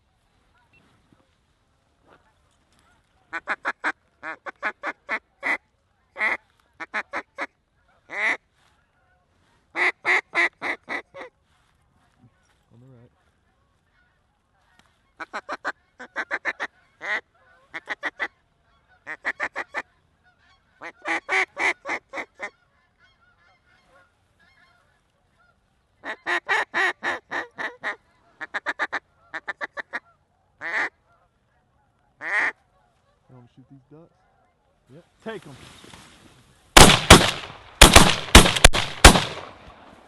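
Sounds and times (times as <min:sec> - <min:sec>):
duck call quacks: 0:06.2 - 0:08.4, 0:09.8 - 0:11.3, 0:15.2 - 0:31.3, 0:32.2 - 0:32.9.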